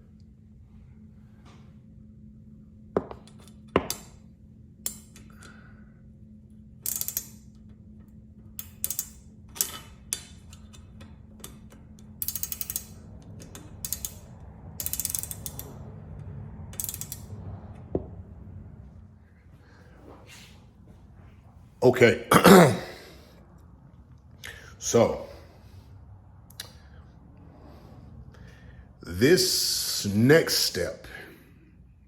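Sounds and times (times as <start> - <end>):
steady low hum: 0.0 - 32.0
metal clicks of hand tools: 6.8 - 7.4, 8.6 - 14.2
ratchet wrench clicking: 6.8 - 7.6, 8.6 - 15.7, 16.7 - 17.3.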